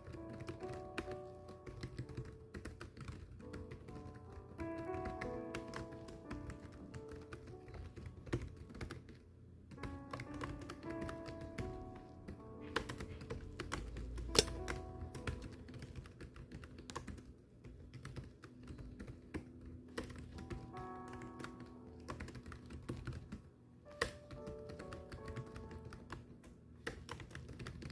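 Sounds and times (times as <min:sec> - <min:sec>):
background music with held notes: 0:00.0 - 0:09.0, 0:09.7 - 0:15.9, 0:20.0 - 0:26.6
keyboard key clicks: 0:12.6 - 0:23.3, 0:23.9 - 0:27.9.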